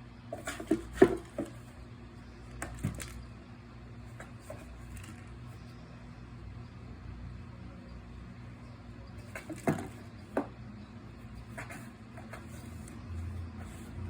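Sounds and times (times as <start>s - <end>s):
knocks and taps inside a box: 0.4s - 1.7s, 9.2s - 10.6s.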